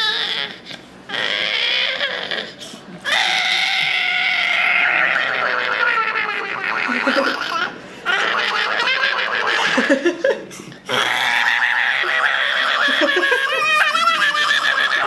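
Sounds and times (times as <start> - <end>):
person making vocal mouth noises: 10.9 - 15.0.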